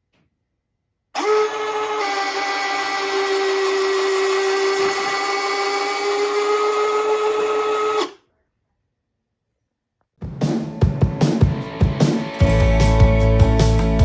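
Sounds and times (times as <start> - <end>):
landing gear motor whine: 1.2 - 8.2.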